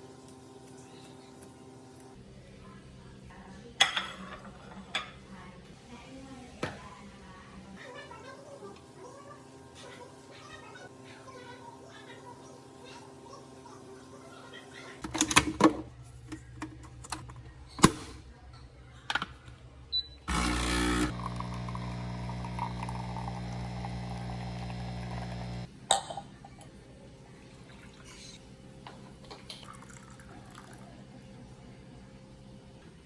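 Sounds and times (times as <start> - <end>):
coffee machine pump buzzing: 20.3 - 25.7
coffee pouring: 20.3 - 25.7, 27.5 - 28.2, 29.3 - 31.0.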